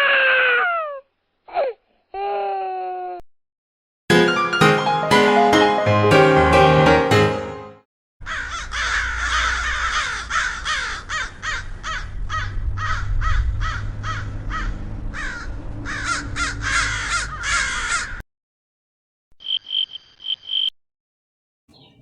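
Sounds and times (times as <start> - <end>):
crows cawing: 8.2 - 18.2
low rumble: 11.6 - 17.4.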